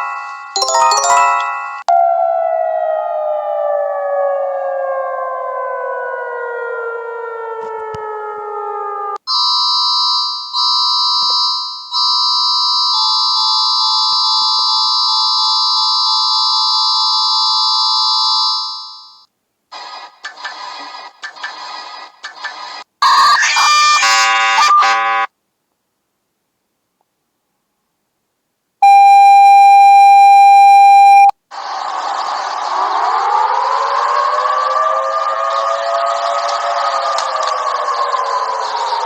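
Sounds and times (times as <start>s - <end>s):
steady high alarm tones: 0.0s - 1.9s
falling alarm tone: 0.0s - 9.1s, 28.8s - 31.3s, 32.7s - 39.0s.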